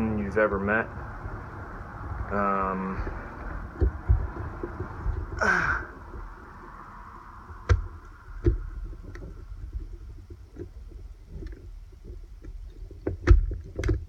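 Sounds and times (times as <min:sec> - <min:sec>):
low rumble: 0:00.0 - 0:12.8
breathy exhale: 0:05.4 - 0:06.0.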